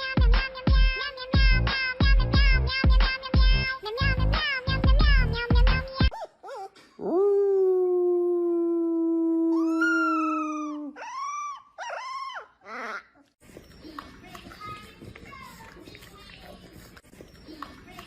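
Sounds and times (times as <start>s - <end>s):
dog howling: 7.0s - 13.0s.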